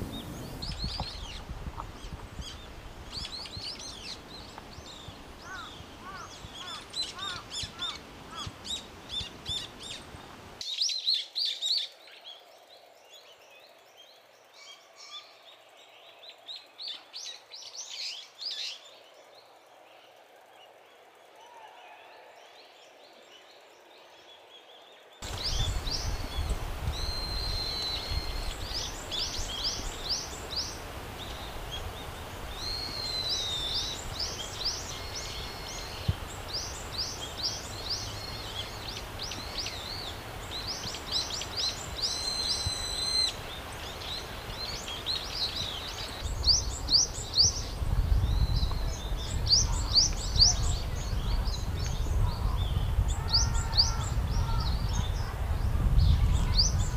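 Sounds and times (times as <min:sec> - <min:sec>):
birds calling shrilly: 0:04.9 - 0:09.7, 0:25.2 - 0:55.4.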